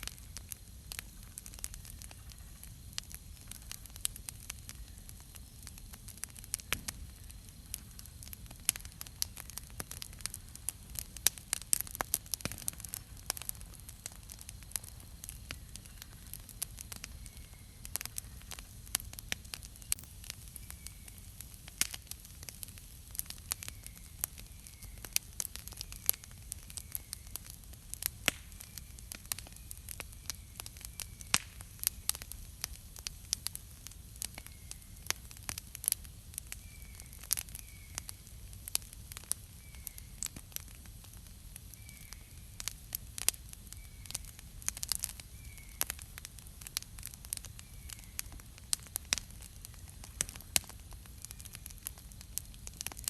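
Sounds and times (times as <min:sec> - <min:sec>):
campfire crackling and popping: 0:00.0 - 0:53.0
soft steady hiss: 0:00.0 - 0:53.0
faint bird chirps: 0:15.2 - 0:18.5, 0:19.5 - 0:21.5, 0:23.4 - 0:27.5, 0:36.5 - 0:38.3, 0:39.5 - 0:40.3, 0:41.7 - 0:42.6, 0:43.6 - 0:44.4, 0:45.2 - 0:46.0, 0:47.5 - 0:48.4.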